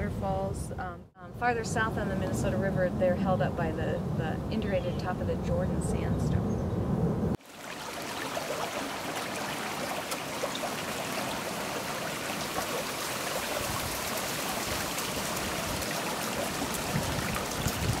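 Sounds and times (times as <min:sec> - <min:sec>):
faint water splashes: 0:07.4 - 0:18.0
water pouring over waterfall: 0:07.4 - 0:18.0.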